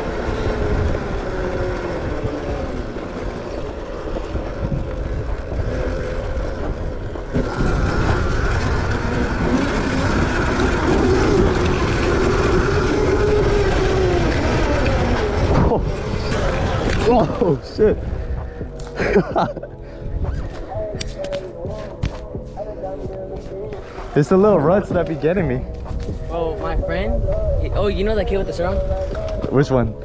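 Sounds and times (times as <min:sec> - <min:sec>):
electric motorbike motor whine: 0:00.0 - 0:17.5
tyre rumble: 0:00.0 - 0:26.5
heavy wind: 0:00.0 - 0:30.0.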